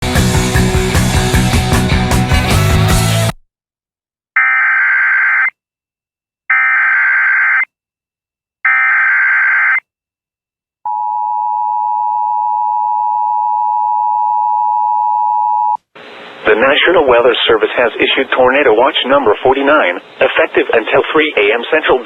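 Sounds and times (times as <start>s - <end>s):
steady attention tone: 10.9s - 22.0s.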